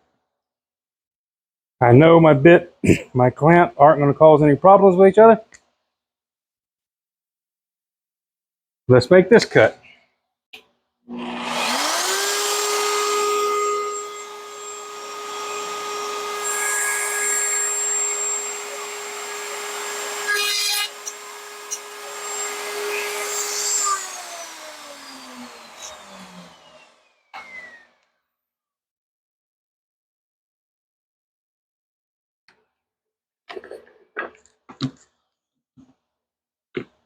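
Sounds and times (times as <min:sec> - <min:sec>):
router cutting wood: 0:11.1 - 0:28.0
router spinning: 0:11.1 - 0:28.0.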